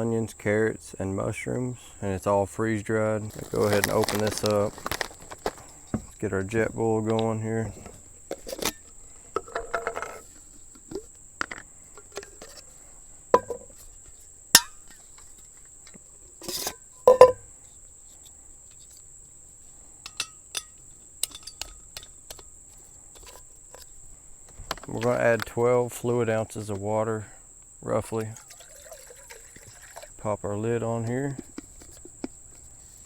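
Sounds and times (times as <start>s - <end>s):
crickets chirping: 0.0s - 33.0s
camp stove and pot clinking: 3.2s - 12.7s, 13.3s - 17.6s, 20.0s - 25.6s, 28.0s - 30.3s.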